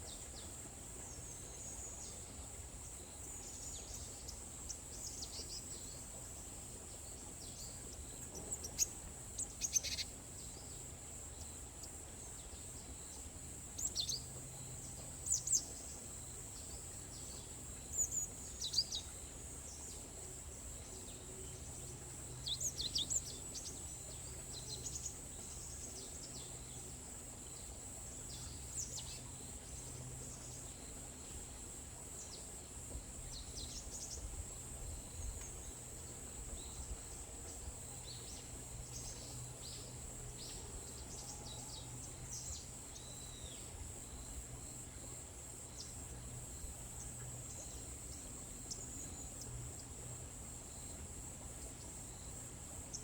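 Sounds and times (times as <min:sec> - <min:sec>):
small birds chirping: 0:07.4 - 0:10.8.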